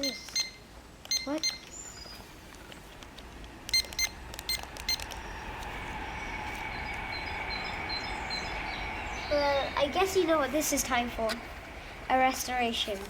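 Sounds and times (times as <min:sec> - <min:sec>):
short electronic beeps: 0:00.0 - 0:01.7, 0:03.7 - 0:05.1
steady electronic whine: 0:01.8 - 0:13.0.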